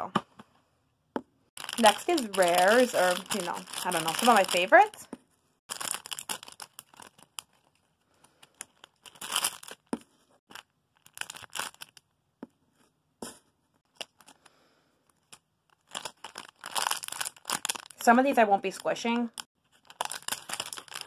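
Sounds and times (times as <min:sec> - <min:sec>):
plastic packaging crinkling: 0:01.6 - 0:05.0, 0:05.7 - 0:12.0, 0:15.2 - 0:18.1, 0:18.7 - 0:21.0.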